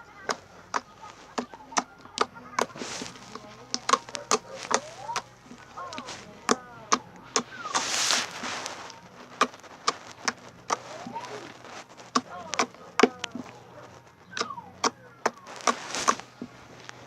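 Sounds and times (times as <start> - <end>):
slime squeaks: 0.0 - 17.0
slime clicking and popping: 0.2 - 11.4.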